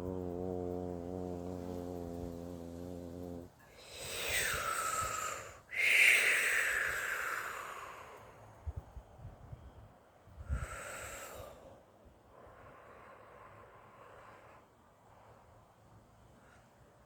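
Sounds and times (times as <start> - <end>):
woman blowing hissing breaths: 3.7 - 8.4, 10.5 - 11.7.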